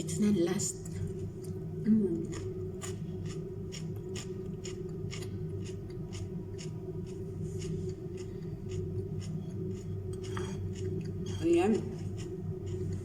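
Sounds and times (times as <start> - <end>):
steady low hum: 0.0 - 13.0
chewing crunchy vegetables: 2.2 - 13.0.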